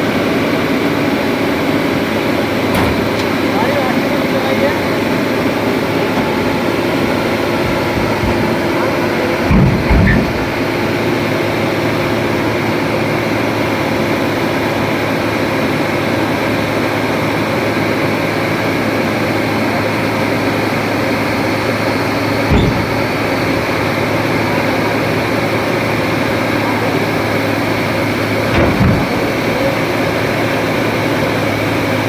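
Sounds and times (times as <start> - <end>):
diesel engine running: 0.0 - 32.0
short low thumps: 6.1 - 11.0, 22.5 - 25.2.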